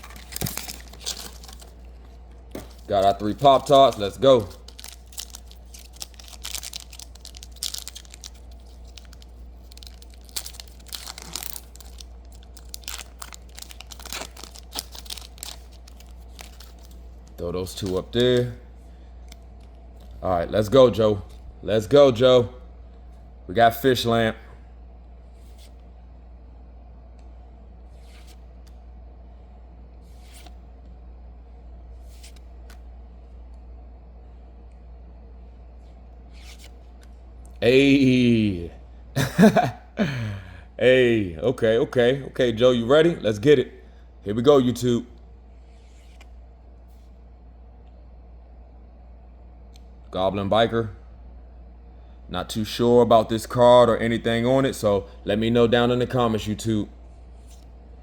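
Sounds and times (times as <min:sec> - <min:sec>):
foil wrappers crinkling and tearing: 0:00.0 - 0:02.0, 0:02.7 - 0:18.0
trading cards rustling: 0:00.0 - 0:18.5
steady low hum: 0:00.0 - 0:58.0.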